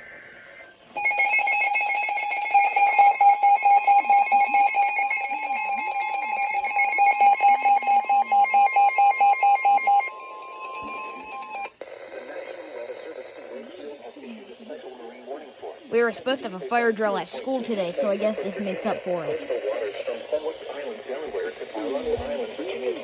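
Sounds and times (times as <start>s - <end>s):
data burst: 1.0s - 11.7s
steady alert tone: 1.0s - 11.7s
rapid electronic beeping: 1.0s - 14.4s.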